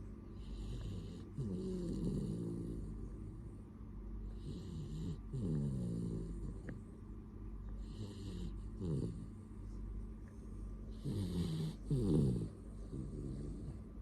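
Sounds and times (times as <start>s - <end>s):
dog snoring: 0.4s - 3.6s, 4.2s - 6.9s, 7.8s - 9.4s, 10.9s - 14.0s.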